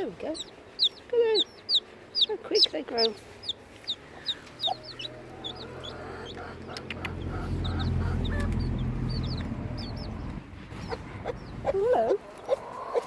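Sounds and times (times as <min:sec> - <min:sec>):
chicks peeping: 0:00.0 - 0:13.0
hen clucking softly: 0:00.3 - 0:13.0
low rumble: 0:04.8 - 0:11.9.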